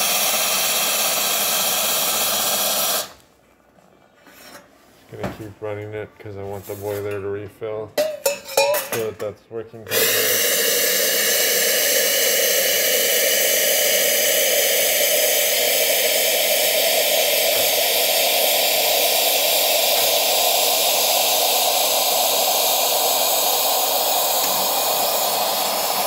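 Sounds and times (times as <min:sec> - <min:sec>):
espresso machine steam hissing: 0:00.0 - 0:03.2, 0:09.9 - 0:26.0.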